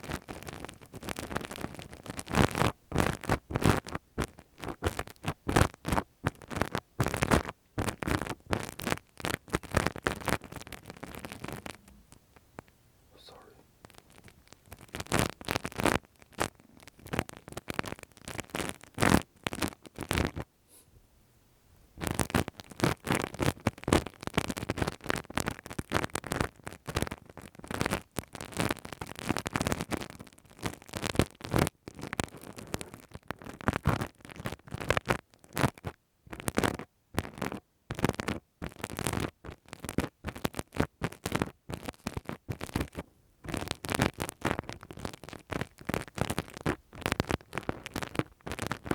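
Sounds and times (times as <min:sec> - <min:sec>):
scratching and rubbing on microphone: 0:00.0 - 0:20.8, 0:22.0 - 0:48.9.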